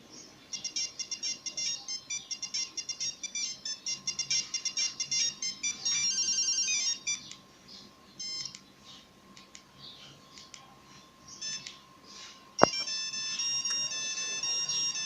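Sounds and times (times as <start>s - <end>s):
monophonic ringtone beeps: 0.5s - 7.2s, 12.6s - 15.0s.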